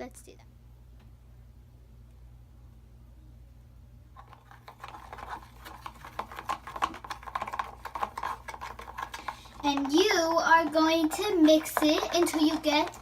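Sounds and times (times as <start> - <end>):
spoon stirring slime in a bowl: 4.2 - 13.0.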